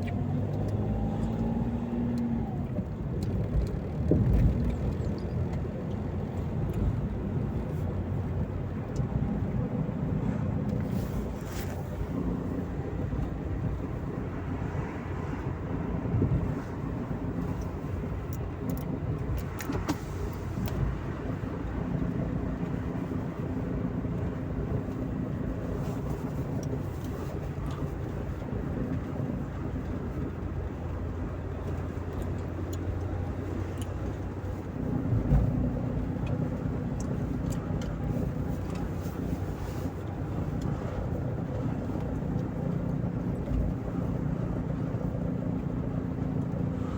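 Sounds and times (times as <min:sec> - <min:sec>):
diesel engine running: 0:00.0 - 0:14.3.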